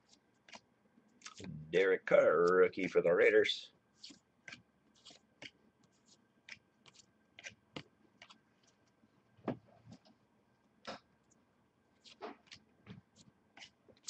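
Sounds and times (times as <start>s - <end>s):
trading cards flipped: 4.0s - 5.6s.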